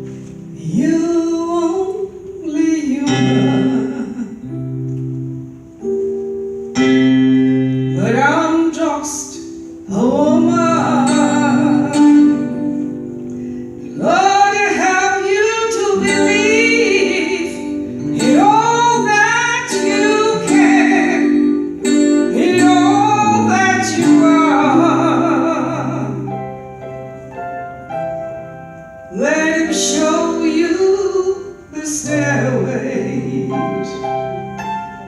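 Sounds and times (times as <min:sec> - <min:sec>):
instrumental accompaniment chords: 0:00.0 - 0:35.0
woman singing: 0:00.4 - 0:04.7, 0:07.9 - 0:13.1, 0:13.9 - 0:26.4, 0:29.1 - 0:34.4.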